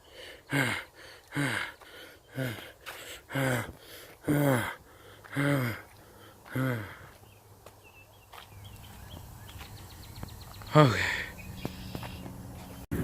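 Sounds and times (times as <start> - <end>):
man panting: 0.0 - 7.2, 10.7 - 11.4.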